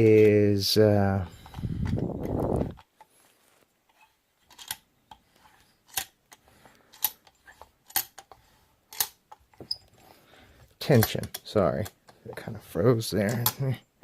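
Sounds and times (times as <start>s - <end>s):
padlock clicks and knocks: 8.9s - 9.4s.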